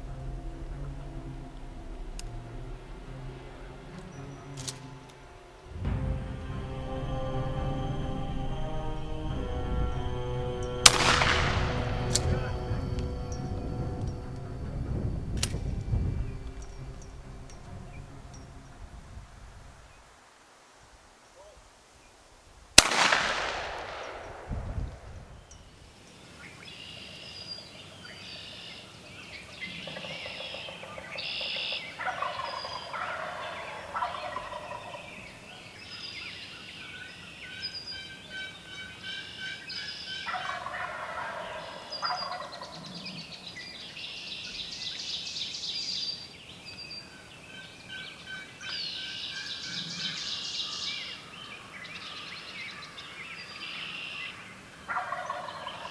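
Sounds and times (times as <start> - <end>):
songbirds calling: 0.0 - 5.8, 6.9 - 20.3, 21.3 - 55.9
wild turkeys gobbling: 10.4 - 13.4, 26.4 - 46.4, 47.0 - 55.9
shotgun shot echoing: 10.8 - 12.7, 22.8 - 25.2.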